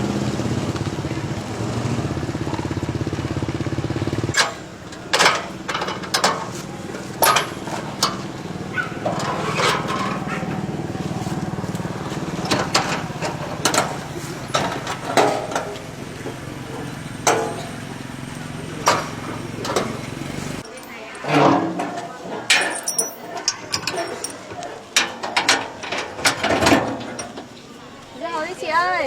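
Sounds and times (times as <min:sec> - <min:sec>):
small engine running: 0:00.0 - 0:05.7, 0:06.6 - 0:20.9.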